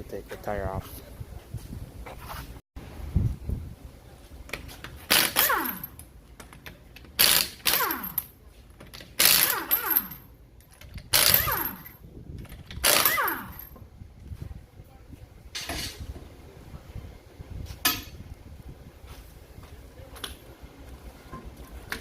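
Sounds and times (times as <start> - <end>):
impact wrench bursts: 5.0 - 6.0, 7.1 - 8.3, 8.9 - 10.3, 11.0 - 11.9, 12.6 - 13.8
impact wrench whine spinning down: 7.2 - 8.3, 12.8 - 13.7.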